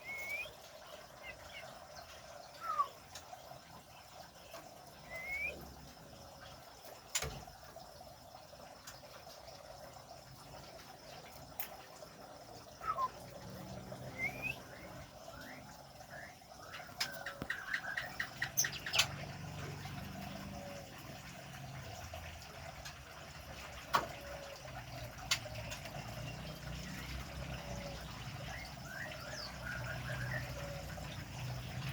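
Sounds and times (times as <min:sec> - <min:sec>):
rising bird calls: 0:00.0 - 0:03.4, 0:04.9 - 0:06.2, 0:12.6 - 0:21.3, 0:26.5 - 0:31.9
bird chirping calls: 0:00.0 - 0:06.0, 0:12.4 - 0:22.1, 0:23.6 - 0:31.9.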